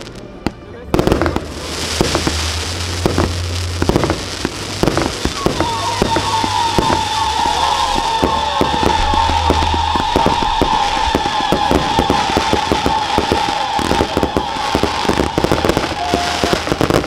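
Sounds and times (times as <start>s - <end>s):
fireworks bangs and pops: 0.0s - 17.0s
fireworks crackling: 0.0s - 17.0s
wavering whistle: 5.3s - 16.8s.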